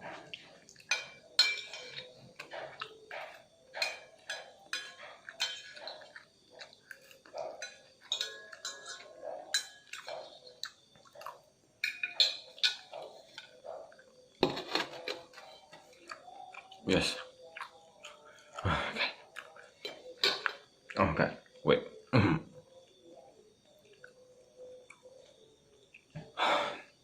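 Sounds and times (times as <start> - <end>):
cutlery clinking against a dish: 0.0 - 16.8, 19.4 - 20.8
person chewing: 15.7 - 21.0.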